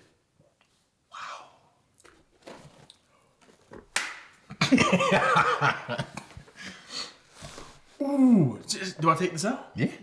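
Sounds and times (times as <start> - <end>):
sharp slap: 4.0 - 4.3.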